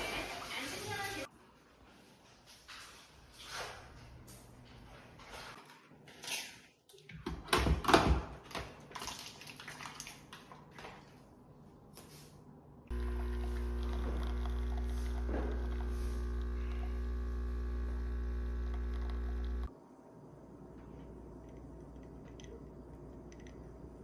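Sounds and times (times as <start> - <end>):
low electrical hum: 12.9 - 24.0.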